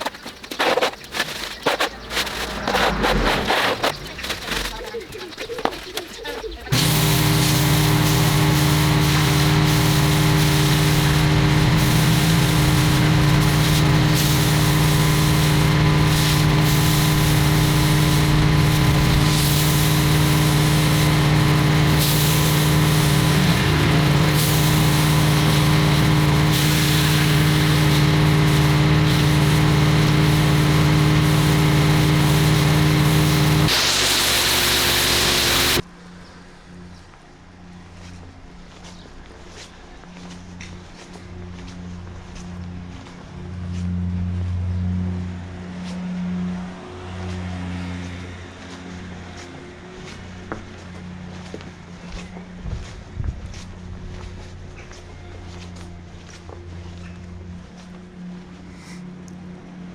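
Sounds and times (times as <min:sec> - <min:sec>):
pressure washer spraying: 0:06.7 - 0:35.8.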